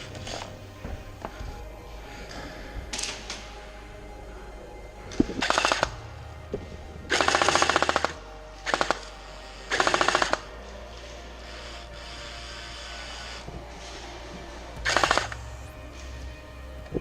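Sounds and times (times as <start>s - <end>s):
airsoft machine gun bursts: 5.4s - 5.9s, 14.9s - 15.4s.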